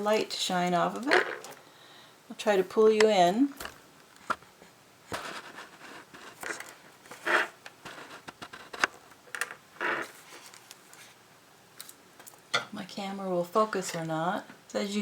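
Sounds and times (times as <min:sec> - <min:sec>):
paper booklet rustling: 0:10.0 - 0:11.2.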